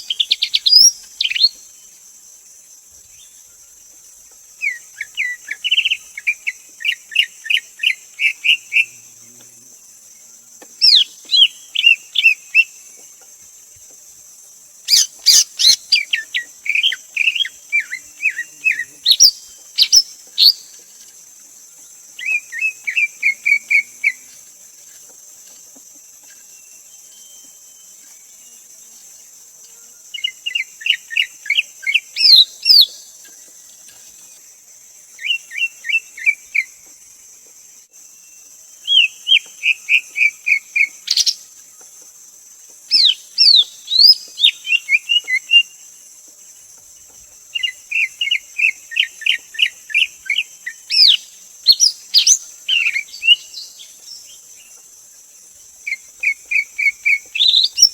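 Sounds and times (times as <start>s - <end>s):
bird singing whistled notes: 0.0s - 1.8s, 14.9s - 20.7s, 26.4s - 28.6s, 30.2s - 33.1s, 38.2s - 41.4s, 42.9s - 45.7s, 47.6s - 54.4s, 55.9s - 57.9s
steady high hiss: 0.0s - 57.9s.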